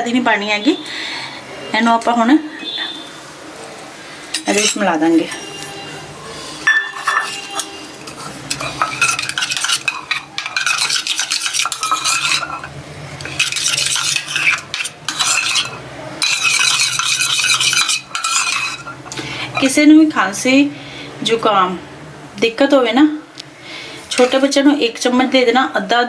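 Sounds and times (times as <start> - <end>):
spoon scraping a small dish: 4.4 - 19.8, 24.1 - 24.6.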